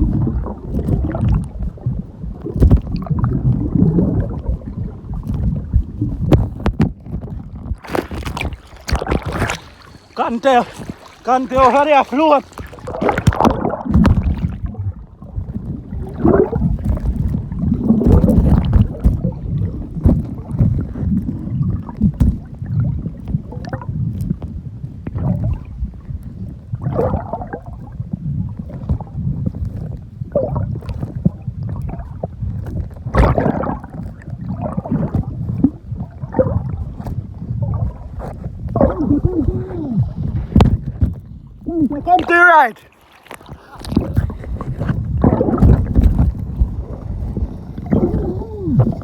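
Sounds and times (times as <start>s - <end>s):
water sloshing and gurgling: 0.0s - 49.0s
crackles: 30.8s - 49.0s.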